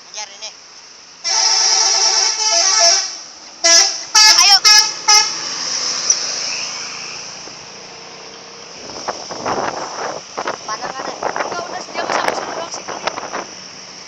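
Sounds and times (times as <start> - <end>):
bus horn playing a tune: 1.2 - 5.6.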